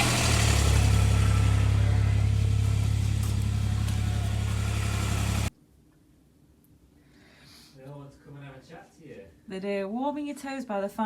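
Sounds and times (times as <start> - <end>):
truck engine driving: 0.0 - 5.5.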